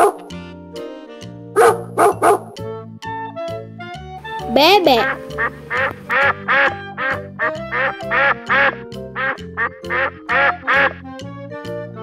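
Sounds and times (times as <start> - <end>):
duck quacking: 4.9 - 11.0.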